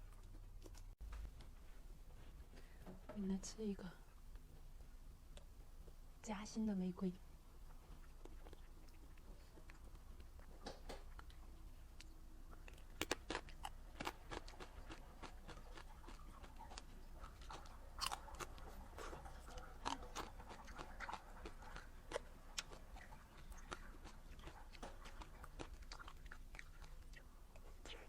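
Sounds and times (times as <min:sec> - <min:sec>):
crisp chewing crunches: 0:07.8 - 0:28.0.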